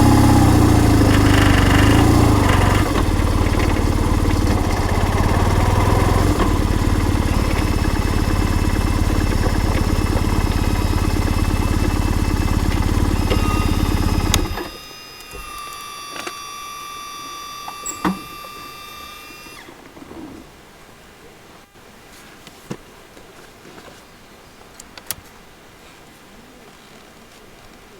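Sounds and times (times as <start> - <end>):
motorcycle engine idling: 0.0 - 14.6
thin high whine: 11.2 - 19.7.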